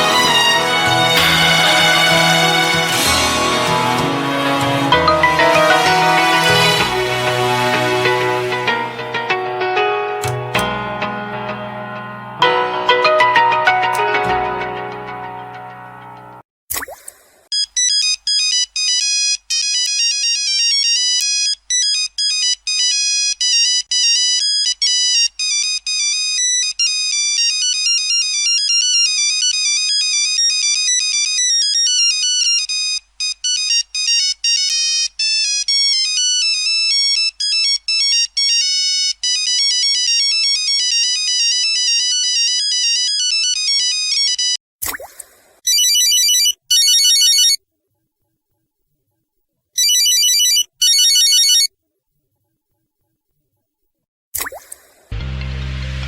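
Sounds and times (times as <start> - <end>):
phone ringtone melody: 0.0 - 10.4, 12.4 - 15.8, 45.7 - 47.6, 49.8 - 51.7.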